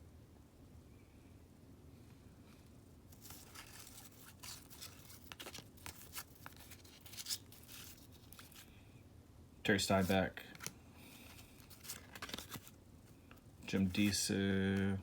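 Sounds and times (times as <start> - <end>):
cards sliding with papery swishes: 9.9 - 12.8.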